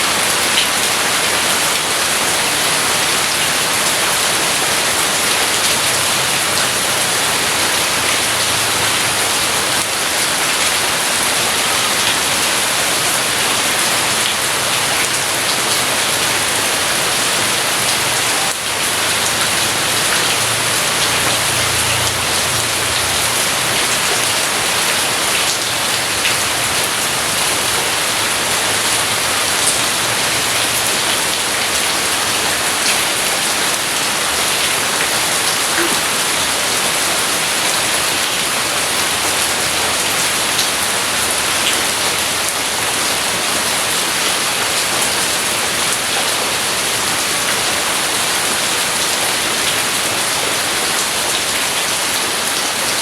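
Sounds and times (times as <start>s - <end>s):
heavy rain: 0.0s - 53.0s.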